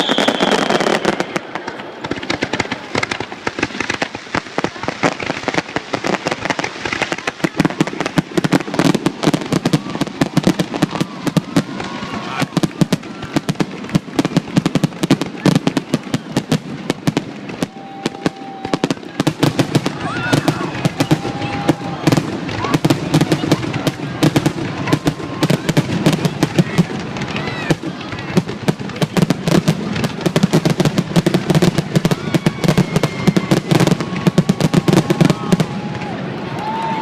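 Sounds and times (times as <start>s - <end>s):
firework burst with falling whistle: 0.0s - 1.4s, 17.6s - 19.2s, 19.8s - 24.2s, 31.8s - 37.0s
fireworks crackling pops: 0.0s - 37.0s.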